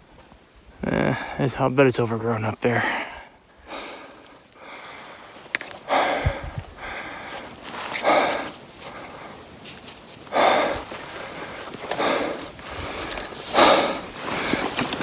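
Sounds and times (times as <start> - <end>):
man breathing hard: 2.8 - 9.6, 10.2 - 14.8.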